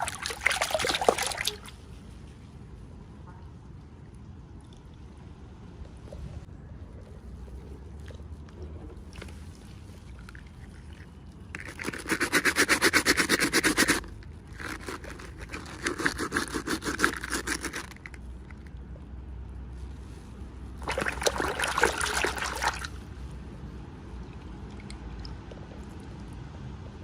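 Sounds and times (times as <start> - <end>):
fast scraping strokes: 11.6 - 18.2.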